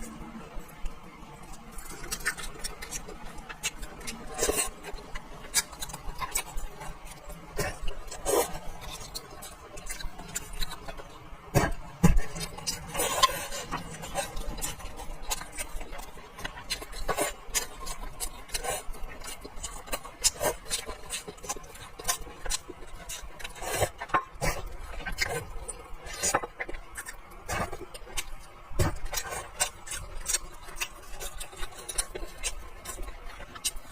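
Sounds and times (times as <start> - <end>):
chewing: 0.0 - 33.9.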